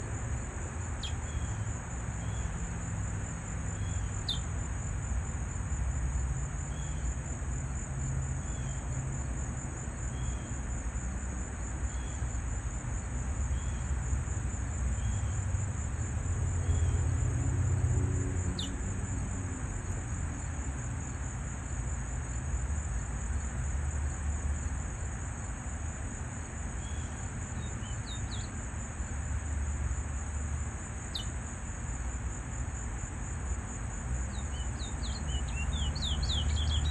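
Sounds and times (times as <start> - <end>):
insect trill: 0.0 - 36.9
sharp bird chirps: 1.0 - 2.5, 3.7 - 4.5, 18.6 - 18.8, 26.8 - 28.5, 31.1 - 31.4, 34.3 - 36.9.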